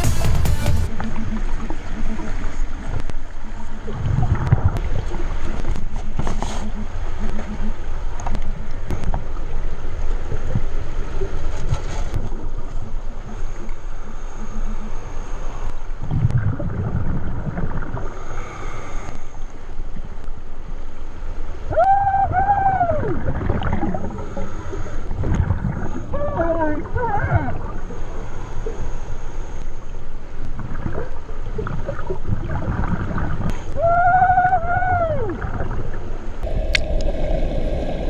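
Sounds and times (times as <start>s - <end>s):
water bubbling: 0.9s - 5.9s, 16.0s - 18.3s, 21.7s - 28.1s, 30.5s - 38.0s
underwater rumble: 0.9s - 38.0s.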